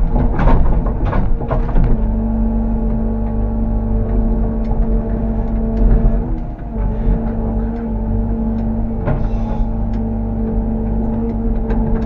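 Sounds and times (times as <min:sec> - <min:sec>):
excavator diesel engine under load: 0:00.0 - 0:12.0
knocks and clunks: 0:00.0 - 0:12.0.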